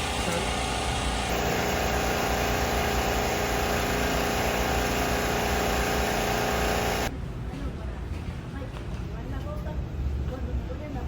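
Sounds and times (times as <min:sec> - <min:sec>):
vehicle engine running: 0:00.0 - 0:07.1.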